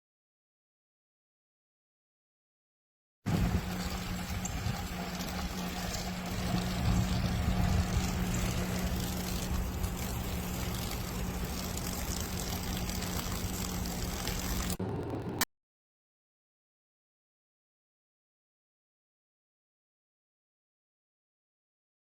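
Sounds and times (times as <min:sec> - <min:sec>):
rushing water: 0:03.3 - 0:14.8
pump motor hum: 0:03.3 - 0:15.4.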